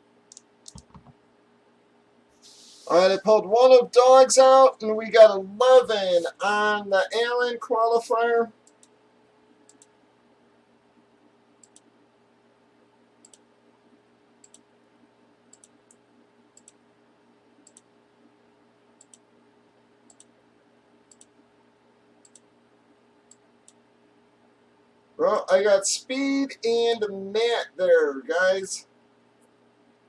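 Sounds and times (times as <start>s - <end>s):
low steady hum: 0.0s - 30.0s
computer mouse clicking: 0.3s - 1.2s, 8.6s - 9.0s, 9.6s - 9.9s, 11.6s - 11.9s, 13.2s - 13.4s, 14.4s - 14.7s, 15.5s - 16.0s, 16.6s - 16.8s, 17.6s - 17.9s, 19.0s - 19.2s, 20.1s - 20.3s, 21.1s - 21.4s, 22.2s - 22.5s.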